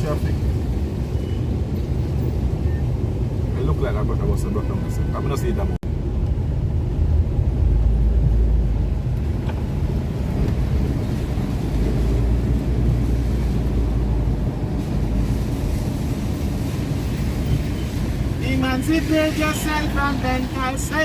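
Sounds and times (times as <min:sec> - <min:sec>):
car driving rumble from inside: 0:05.8 - 0:21.0.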